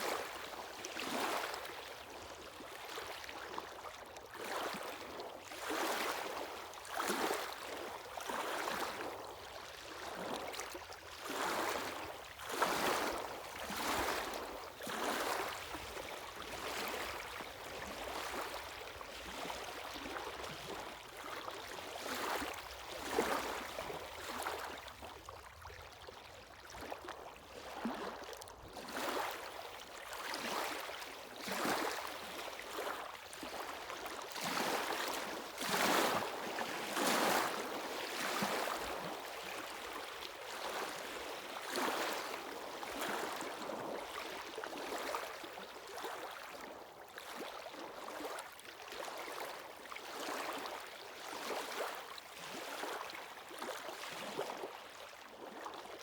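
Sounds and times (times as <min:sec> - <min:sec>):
sea waves breaking on shore: 0:34.3 - 0:44.1.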